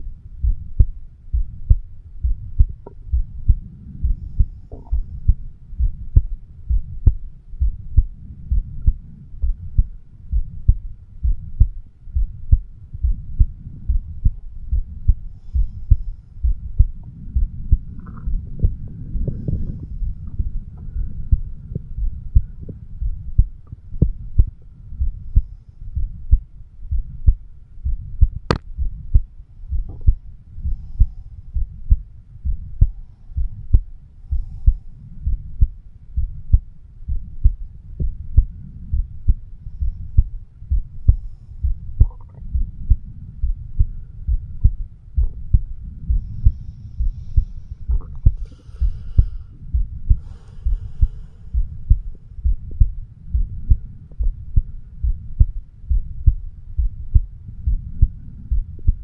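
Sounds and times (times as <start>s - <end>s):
heartbeat: 0.0s - 59.0s
low hum: 0.0s - 59.0s.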